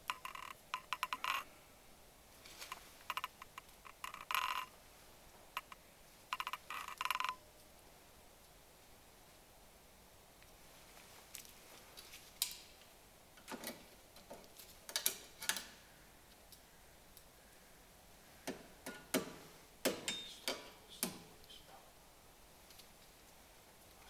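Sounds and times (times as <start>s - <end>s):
tools clicking and clinking: 13.4s - 15.7s, 18.5s - 21.2s.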